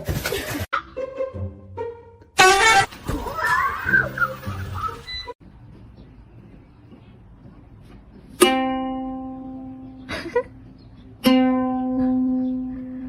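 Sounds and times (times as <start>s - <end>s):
plucked string note: 11.2s - 12.6s.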